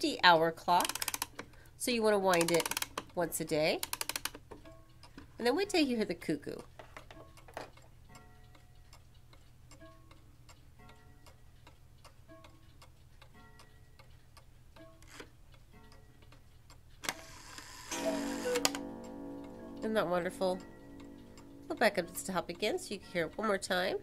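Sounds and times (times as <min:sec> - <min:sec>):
clock ticking: 0:00.0 - 0:24.0
cuckoo clock calling: 0:17.1 - 0:24.0.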